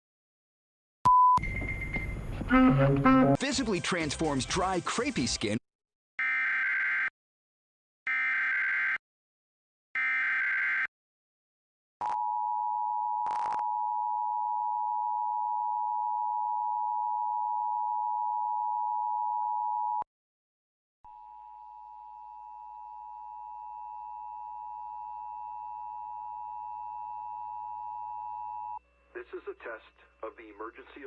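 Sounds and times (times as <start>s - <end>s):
two-tone attention signal: 1.1s - 3.4s
humming attention tone: 1.4s - 3.4s.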